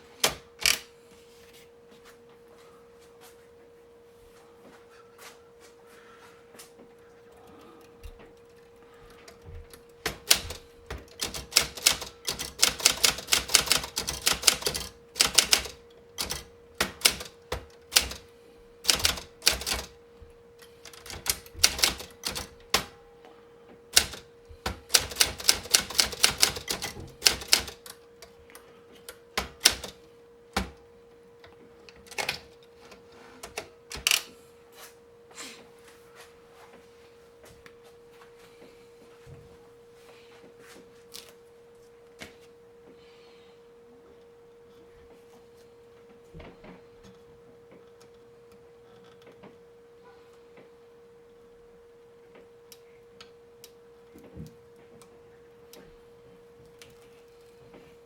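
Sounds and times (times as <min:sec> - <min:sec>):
typewriter key strikes: 0:00.2 - 0:00.9, 0:09.3 - 0:20.0, 0:20.8 - 0:23.0, 0:23.9 - 0:28.3, 0:29.1 - 0:30.8, 0:31.9 - 0:34.3.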